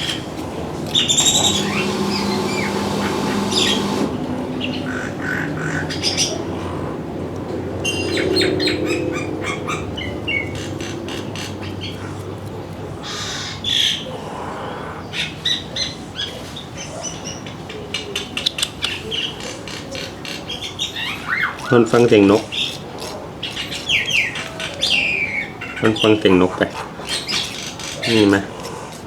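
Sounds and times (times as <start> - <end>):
small birds chirping: 0.0 - 5.2.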